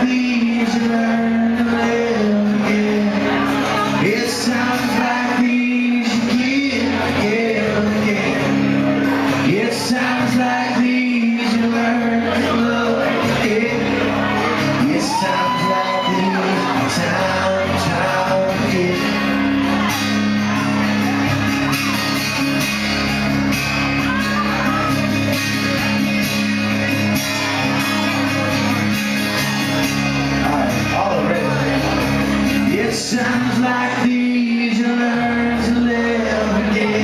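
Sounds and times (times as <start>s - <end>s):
person singing: 0.0s - 20.8s, 30.4s - 37.0s
live rock music: 0.0s - 37.0s
audience shouting along: 12.3s - 26.1s.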